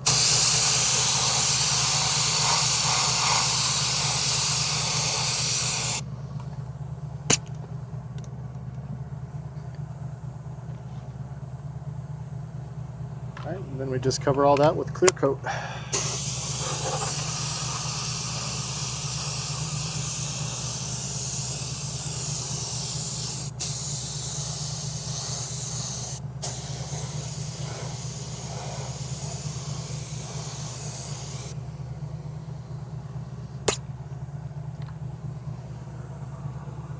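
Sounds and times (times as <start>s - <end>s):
spray hissing: 0.0s - 6.0s, 15.9s - 31.7s
steady low hum: 0.0s - 36.9s
sharp click: 33.7s - 33.9s.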